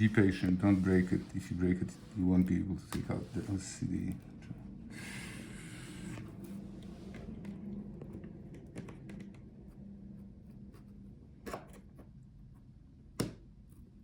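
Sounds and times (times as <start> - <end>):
light scraping: 0.0 - 3.8
faint low hum: 0.0 - 14.0.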